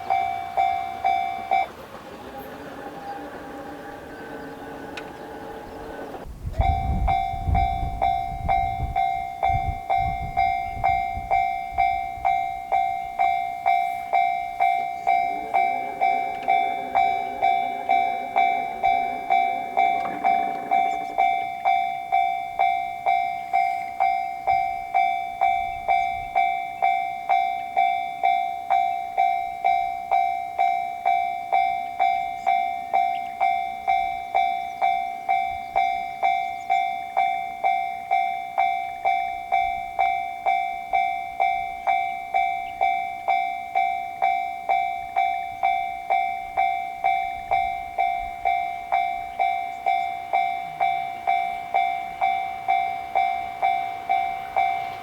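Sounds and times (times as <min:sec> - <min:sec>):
low train rumble: 0:00.0 - 0:55.0
railroad crossing warning bell: 0:00.0 - 0:55.0
multi-tone pitched sound: 0:06.5 - 0:28.3.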